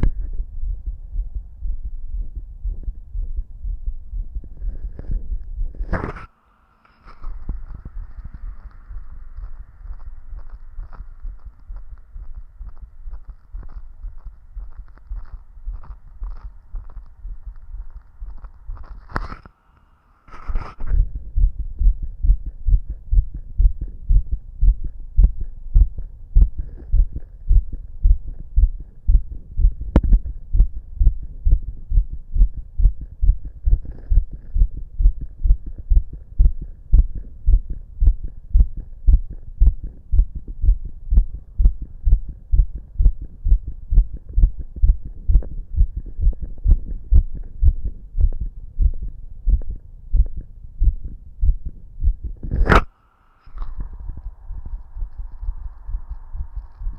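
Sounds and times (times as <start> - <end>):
fast heartbeat thumps: 0.0 - 6.2, 7.2 - 19.2, 20.5 - 52.9, 53.6 - 56.9
sharp click: 52.4 - 54.3.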